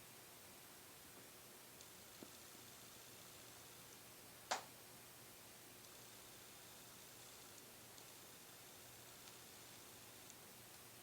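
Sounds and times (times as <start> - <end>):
faint room hiss: 0.0 - 11.0.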